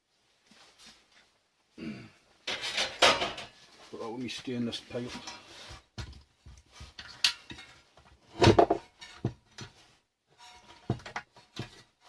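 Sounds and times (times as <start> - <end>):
scrap parts clattering: 2.5 - 3.6, 6.8 - 9.8, 10.4 - 12.0
scrap parts clicking and knocking: 6.0 - 12.0.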